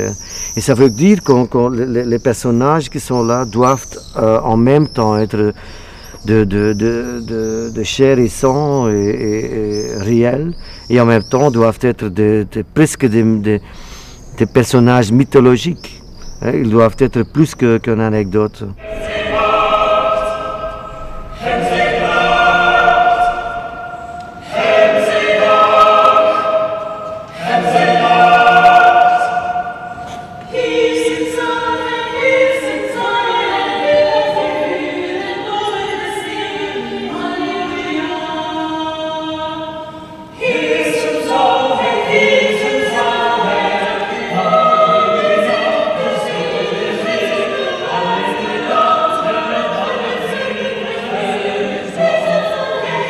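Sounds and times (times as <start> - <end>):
choir singing in harmony: 18.8 - 53.0.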